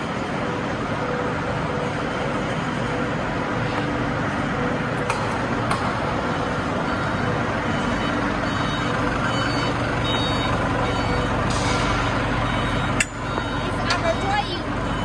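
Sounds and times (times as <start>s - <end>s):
factory machinery drone: 0.0s - 15.0s
faint high beeps: 6.2s - 15.0s.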